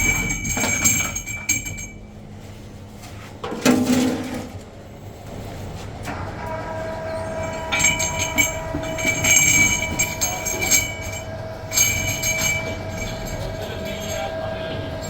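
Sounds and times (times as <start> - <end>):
metalworking machine running: 3.6 - 15.0.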